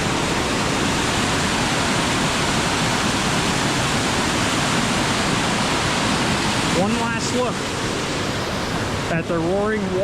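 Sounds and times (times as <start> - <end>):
waterfall roar: 0.0 - 10.0.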